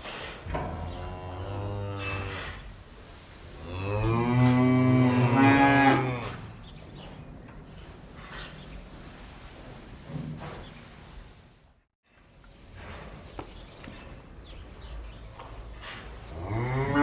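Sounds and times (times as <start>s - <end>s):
cattle mooing: 0.5s - 2.6s, 3.6s - 6.6s, 16.3s - 17.0s.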